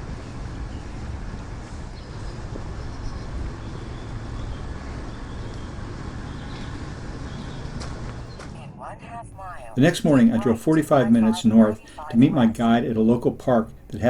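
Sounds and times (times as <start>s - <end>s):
moving vehicle noise: 0.0s - 8.4s.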